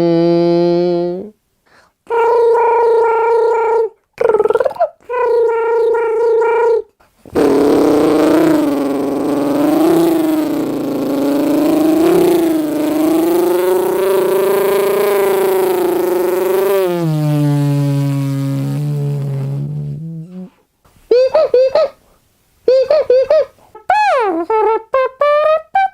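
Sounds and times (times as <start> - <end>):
man imitating revving engine: 7.3 - 20.1.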